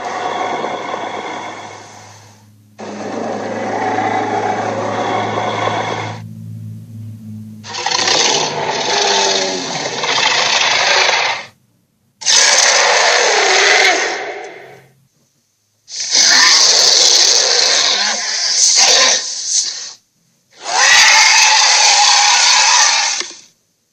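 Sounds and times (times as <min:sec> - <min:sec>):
cartoon sea monster growls: 0:00.0 - 0:06.2, 0:07.6 - 0:11.5, 0:12.2 - 0:14.8, 0:15.9 - 0:19.4, 0:20.6 - 0:23.4.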